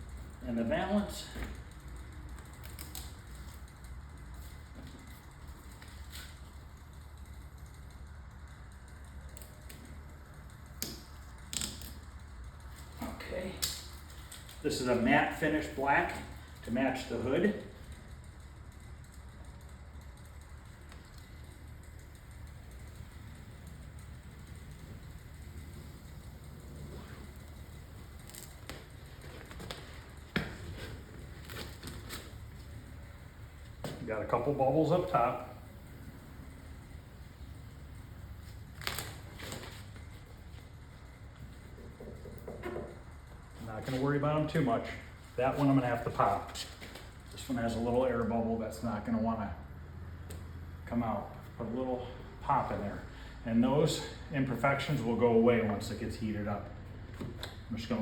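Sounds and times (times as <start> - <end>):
low steady hum: 0.0 - 58.0
hands tapping vinyl stripe: 28.2 - 32.2.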